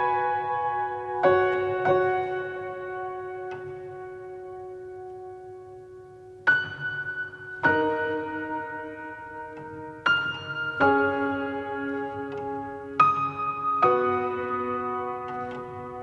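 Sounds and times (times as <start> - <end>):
slow piano chords: 0.0 - 16.0.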